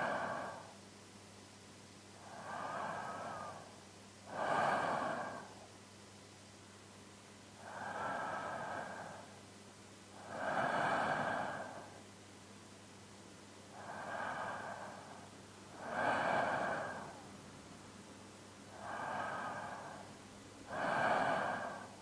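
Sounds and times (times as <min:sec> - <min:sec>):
man's slow sleeping breaths: 0:00.0 - 0:00.8, 0:02.2 - 0:05.7, 0:07.6 - 0:09.4, 0:10.1 - 0:12.1, 0:13.7 - 0:17.4, 0:18.7 - 0:22.0.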